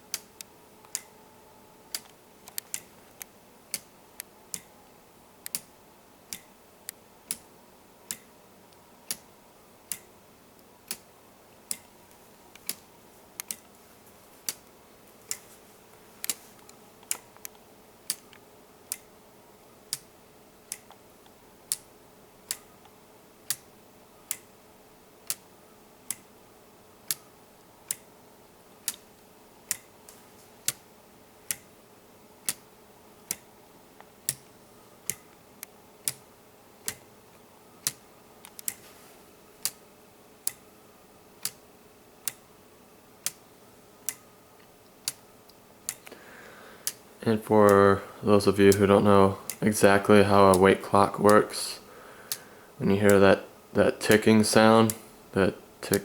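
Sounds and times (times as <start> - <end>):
pendulum clock ticking: 3.6 - 4.8, 5.4 - 6.6, 7.2 - 8.4, 9.0 - 10.2, 10.8 - 12.0, 17.0 - 19.2, 19.8 - 30.0, 30.6 - 31.8, 32.4 - 35.4, 36.0 - 37.2, 40.4 - 40.7, 41.4 - 41.6, 42.2 - 42.5, 43.1 - 43.4, 44.0 - 44.4, 46.8 - 55.1.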